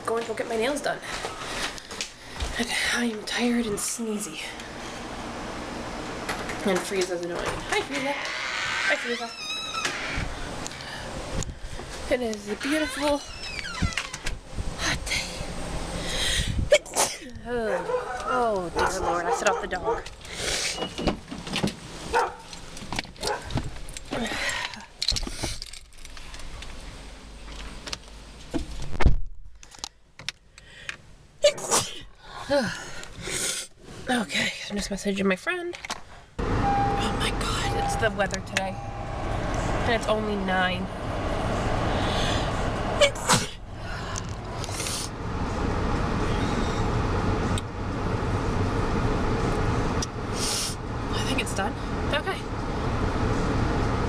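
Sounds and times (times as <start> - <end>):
low vehicle rumble: 0.0 - 28.3, 36.4 - 54.0
dog barking: 17.7 - 20.1, 22.1 - 22.5, 23.2 - 23.5
person sneezing: 31.4 - 32.1.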